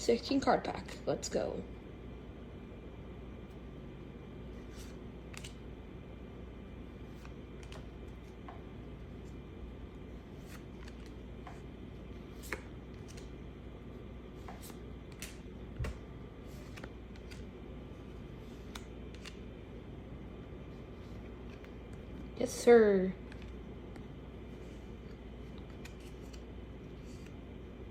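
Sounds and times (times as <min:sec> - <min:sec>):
steady low hum: 0:00.0 - 0:27.9
trading cards flipped through: 0:04.6 - 0:05.7, 0:07.0 - 0:08.6, 0:10.2 - 0:13.4, 0:14.4 - 0:17.5, 0:18.3 - 0:19.5, 0:21.0 - 0:22.2, 0:25.0 - 0:27.4.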